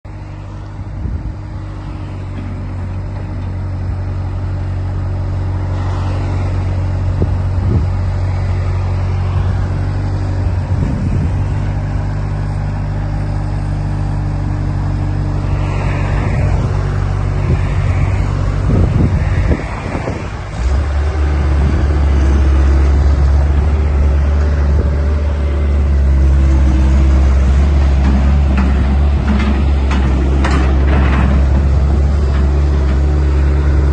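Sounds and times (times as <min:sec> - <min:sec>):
diesel engine running: 0:00.0 - 0:33.9
engine noisy bursts: 0:00.1 - 0:33.9.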